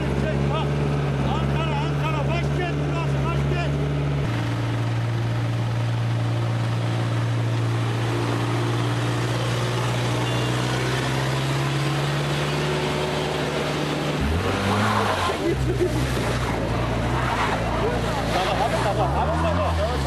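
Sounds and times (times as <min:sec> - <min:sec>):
vehicle engine humming: 0:00.0 - 0:20.0.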